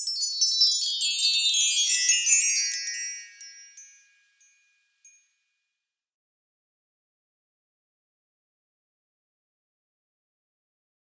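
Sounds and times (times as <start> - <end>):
high-pitched tinkling chimes: 0.0 - 5.4.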